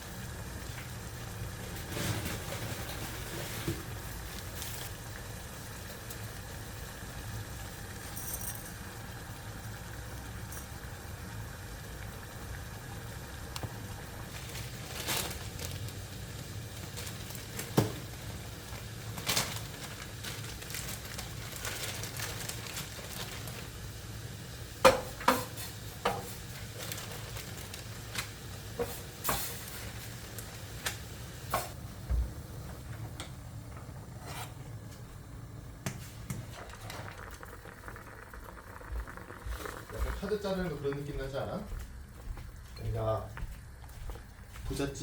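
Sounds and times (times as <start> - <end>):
food sizzling in a pan: 0.0 - 32.5, 35.7 - 41.7
low steady hum: 29.6 - 45.0.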